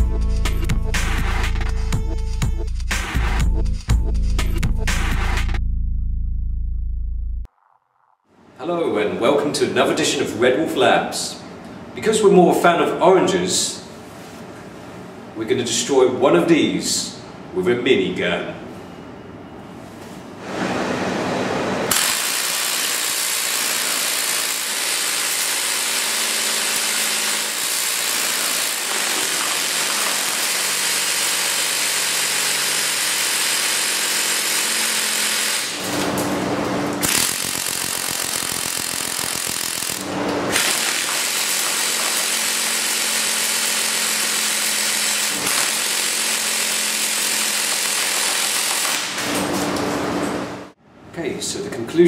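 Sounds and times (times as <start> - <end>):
airsoft minigun firing: 21.9 - 35.8, 37.0 - 49.2.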